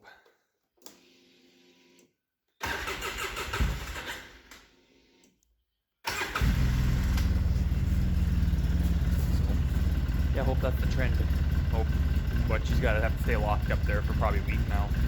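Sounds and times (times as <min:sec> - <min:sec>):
vehicle engine starting and idling: 0:02.6 - 0:04.3, 0:06.1 - 0:15.0.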